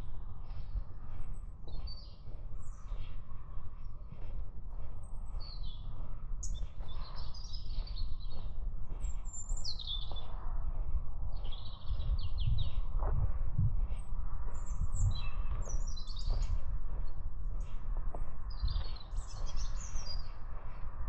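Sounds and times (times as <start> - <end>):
small birds chirping: 0.0 - 20.9
steady low rumble: 0.0 - 21.0.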